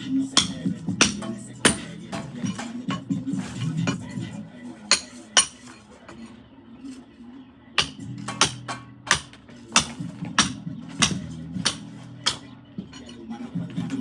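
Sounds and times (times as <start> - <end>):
metal tool clinking on brick: 0.3 - 7.1, 7.8 - 14.0.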